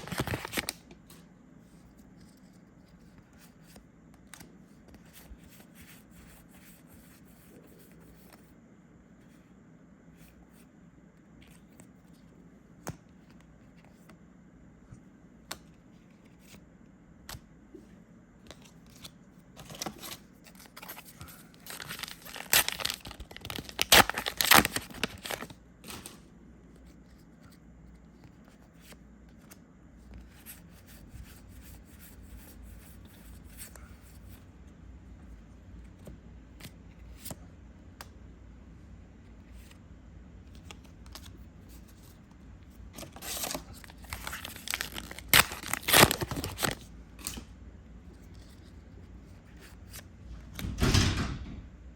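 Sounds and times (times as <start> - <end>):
foil wrapper tearing and crinkling: 0.0 - 0.8, 21.6 - 25.5, 43.0 - 46.9.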